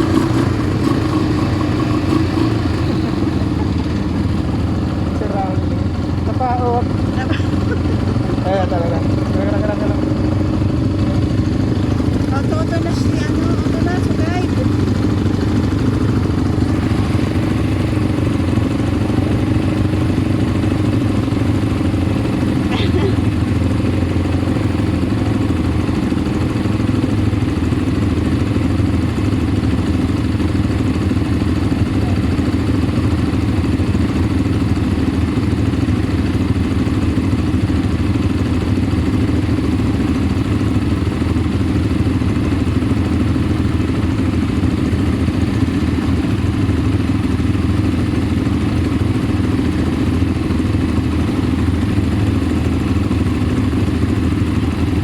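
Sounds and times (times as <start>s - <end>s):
atv engine running: 0.0s - 55.0s.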